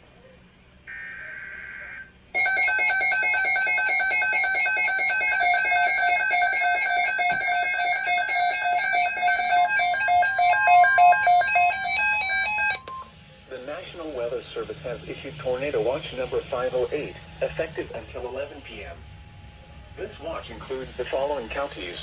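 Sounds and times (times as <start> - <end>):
buzzy electronic alarm tone: 0.9 - 14.3.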